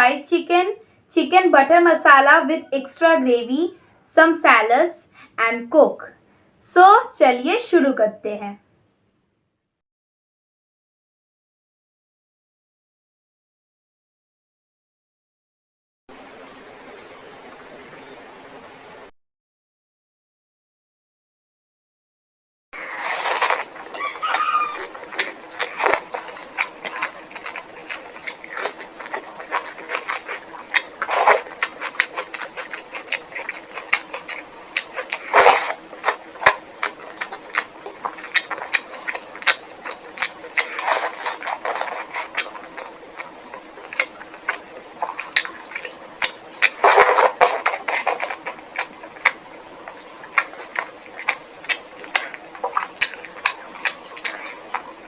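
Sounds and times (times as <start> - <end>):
person chewing: 22.8 - 55.0
wet mouth clicks and smacks: 23.2 - 55.0.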